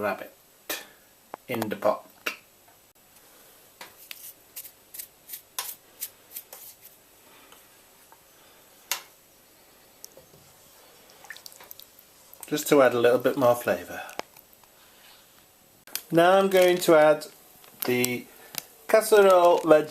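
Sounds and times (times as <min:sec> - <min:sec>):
dried herbs crackling: 0:10.8 - 0:15.1, 0:15.9 - 0:19.9.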